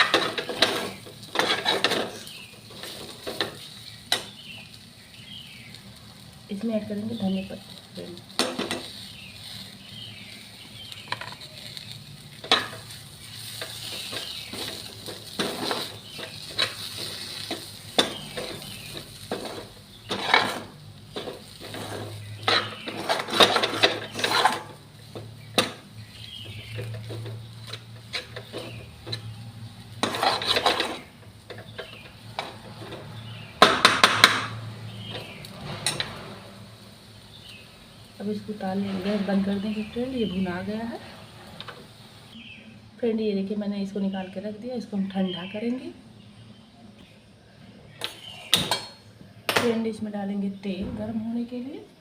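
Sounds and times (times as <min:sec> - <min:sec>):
metal spoon scraping a pan: 0:00.0 - 0:04.9, 0:07.4 - 0:37.6, 0:38.3 - 0:41.8
faint sizzle: 0:00.0 - 0:52.0.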